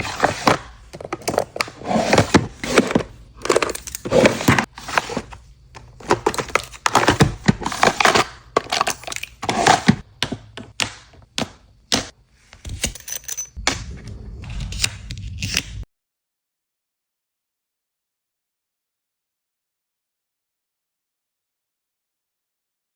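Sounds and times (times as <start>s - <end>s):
packaging rustling: 0.0s - 10.0s.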